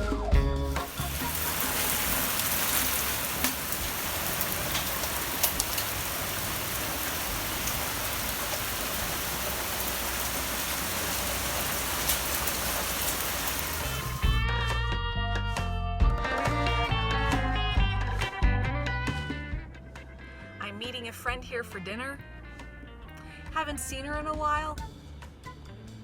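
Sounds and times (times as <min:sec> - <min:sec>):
steady rain: 0:00.8 - 0:14.3.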